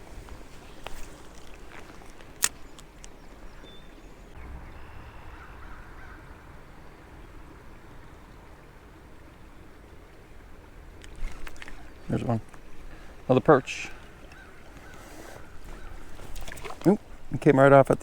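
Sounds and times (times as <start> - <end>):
low rumble: 4.4 - 9.1.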